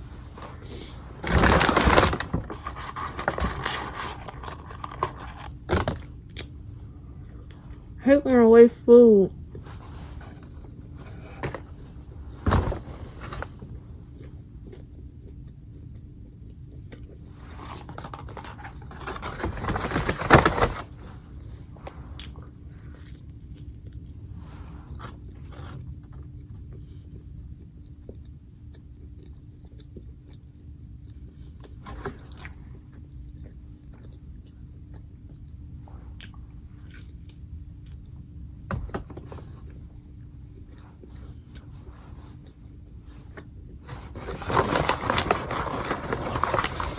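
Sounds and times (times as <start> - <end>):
person chewing and biting: 14.1 - 18.8, 22.1 - 38.4.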